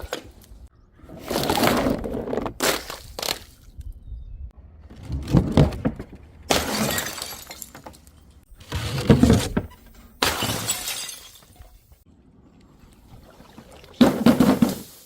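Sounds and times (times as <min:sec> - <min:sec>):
glass bottles shattering: 0:06.5 - 0:08.3, 0:09.2 - 0:11.9, 0:14.1 - 0:15.0.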